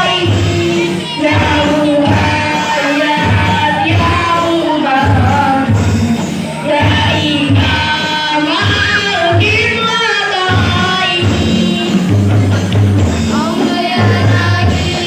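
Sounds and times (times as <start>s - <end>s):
hand-struck frame drums: 0.0s - 15.0s
singing voices: 0.0s - 15.0s.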